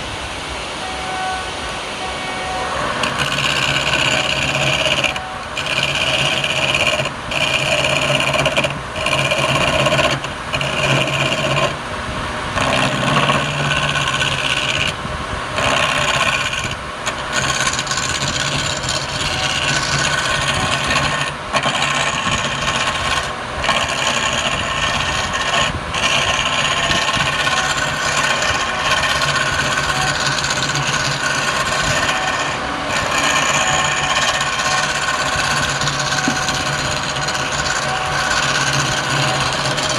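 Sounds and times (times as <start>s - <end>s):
lathe motor hum: 0.0s - 39.9s
tool scraping wood on lathe: 2.7s - 11.8s, 12.6s - 15.0s, 15.6s - 39.9s.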